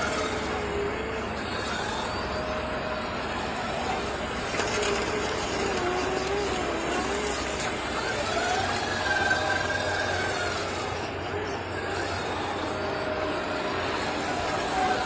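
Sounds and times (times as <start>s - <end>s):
hydraulic pump whining: 0.0s - 15.0s
mechanical hum: 0.0s - 15.0s.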